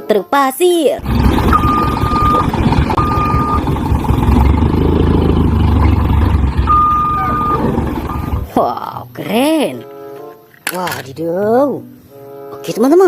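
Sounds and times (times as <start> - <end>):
truck engine rumbling: 1.0 - 8.6
high electronic beep: 1.2 - 3.7, 6.6 - 8.4.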